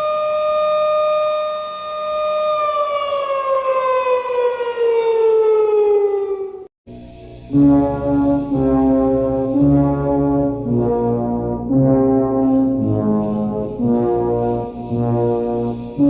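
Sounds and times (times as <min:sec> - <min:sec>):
slow brass chords: 0:07.2 - 0:16.0.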